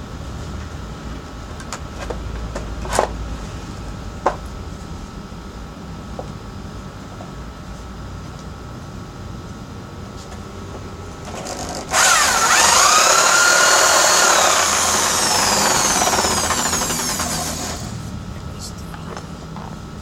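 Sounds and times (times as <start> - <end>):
drum sander humming: 10.8 - 18.2
wood sanding with whine: 11.4 - 17.9.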